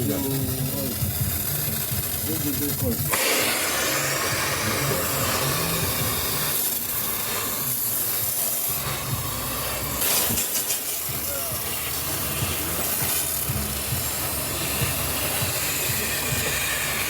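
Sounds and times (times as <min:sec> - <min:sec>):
hissing of air or gas: 0:00.0 - 0:17.0.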